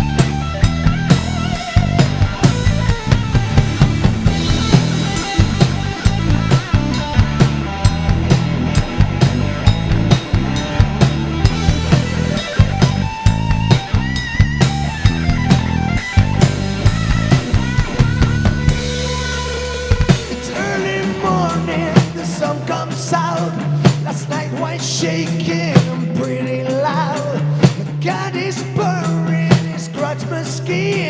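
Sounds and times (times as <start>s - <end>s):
electric guitar lead: 0.0s - 29.3s
bass guitar: 0.0s - 31.0s
drum kit beat: 0.0s - 31.0s.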